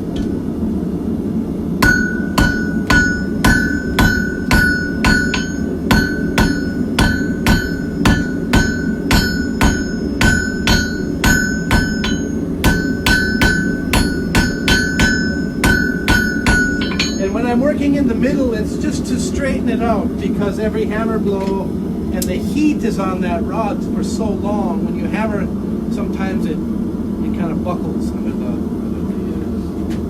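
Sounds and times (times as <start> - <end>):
steady low rumble: 0.0 - 29.9
hammer striking steel on anvil: 1.8 - 17.5.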